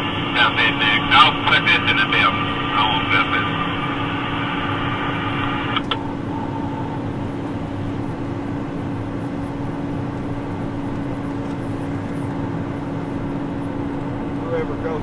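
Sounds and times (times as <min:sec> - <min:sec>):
tractor engine drone: 0:00.0 - 0:13.4.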